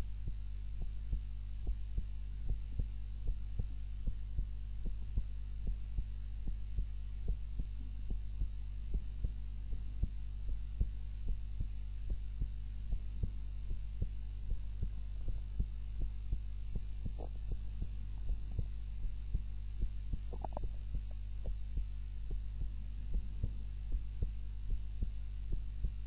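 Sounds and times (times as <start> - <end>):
heart beating: 0.0 - 26.0
low steady hum: 0.0 - 26.0.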